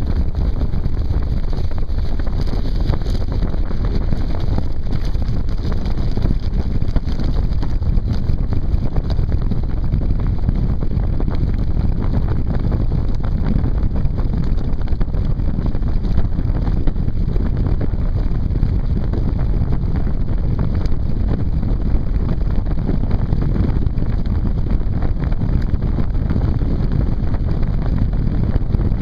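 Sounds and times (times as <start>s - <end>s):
wind buffeting microphone: 0.0s - 29.0s.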